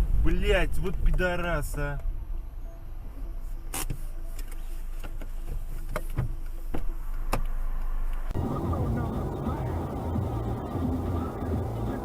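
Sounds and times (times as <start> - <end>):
car road and engine noise: 0.0 - 12.0
rough rumble: 8.3 - 12.0.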